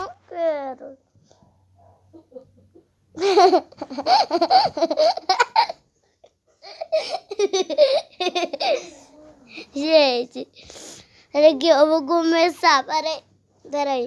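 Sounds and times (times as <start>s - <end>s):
child laughing: 2.2s - 5.8s, 6.6s - 9.7s.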